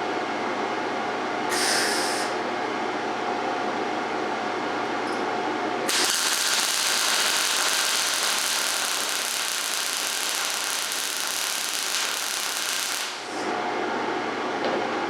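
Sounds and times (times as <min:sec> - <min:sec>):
welding arc crackling: 0:05.9 - 0:13.5.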